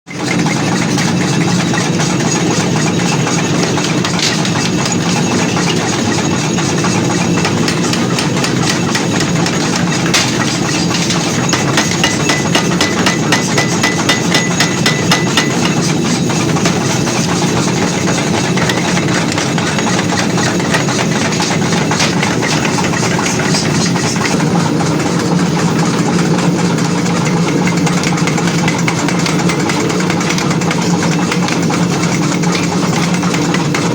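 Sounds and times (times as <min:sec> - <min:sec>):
machinery running: 0:00.2 - 0:33.9
hammer striking hot iron: 0:02.3 - 0:24.2.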